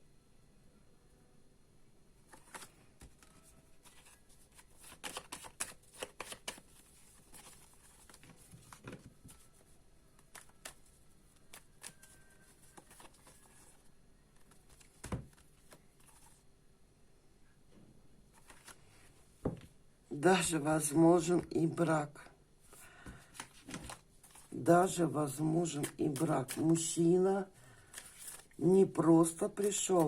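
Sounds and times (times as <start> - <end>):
cards shuffling: 2.3 - 16.4, 18.3 - 19.6, 22.7 - 30.0.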